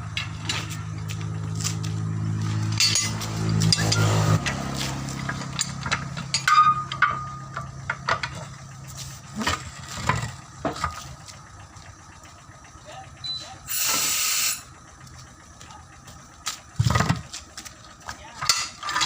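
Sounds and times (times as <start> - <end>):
low hum: 0.0 - 18.0
metal tool knocks and clinks: 2.8 - 4.1.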